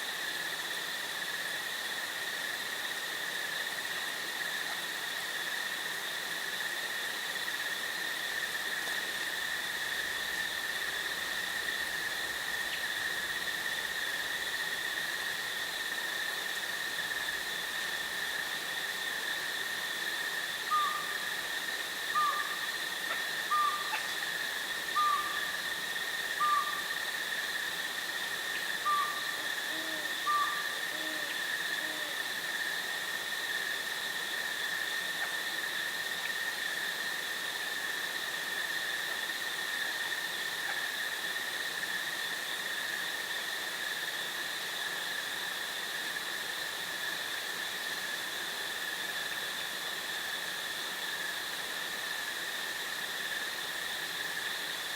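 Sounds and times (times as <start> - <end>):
high insect trill: 0.0 - 54.9
owl hooting: 20.7 - 21.2, 22.1 - 22.6, 23.5 - 24.1, 24.9 - 25.6, 26.4 - 26.9, 28.8 - 32.3.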